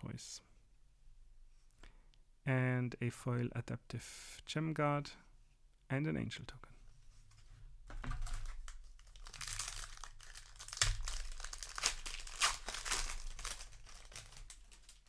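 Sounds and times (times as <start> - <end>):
plastic wrapper crinkling and tearing: 8.2 - 15.0.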